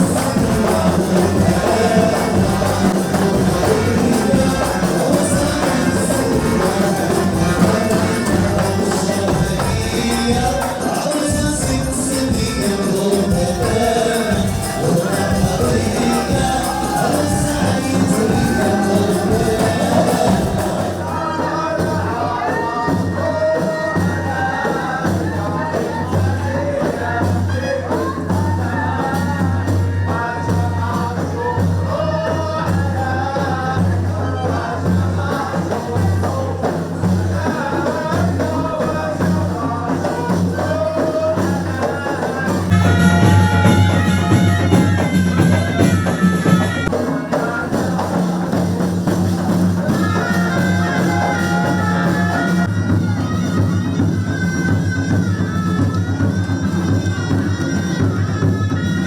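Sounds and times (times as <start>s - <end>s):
music with pulsing beat and melody: 0.0s - 21.0s.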